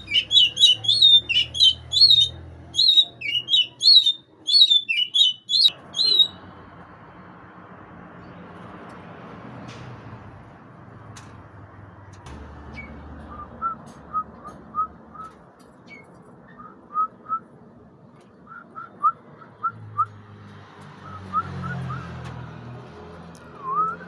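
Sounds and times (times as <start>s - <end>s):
bird whistling: 0.0s - 6.4s, 23.6s - 24.0s.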